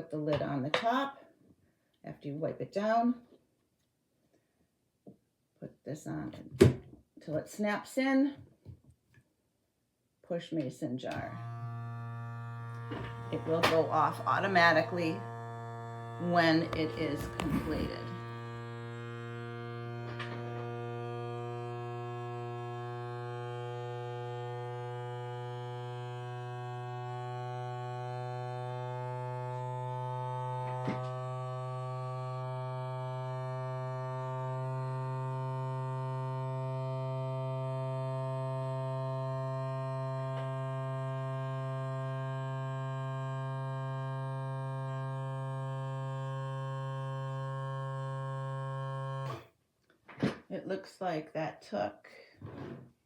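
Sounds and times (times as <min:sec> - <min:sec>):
vacuum pump motor humming: 0:11.2 - 0:49.4.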